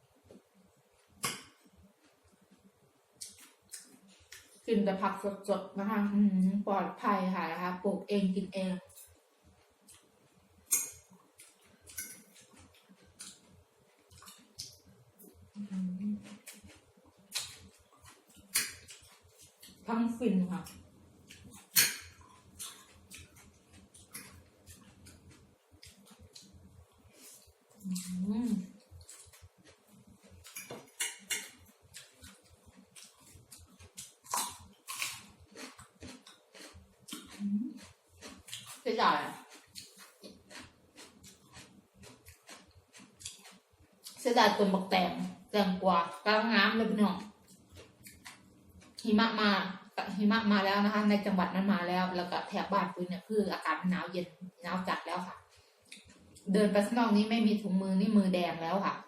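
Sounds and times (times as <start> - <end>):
crunchy chewing of vegetables: 8.9 - 45.5, 47.2 - 49.1, 54.8 - 57.0.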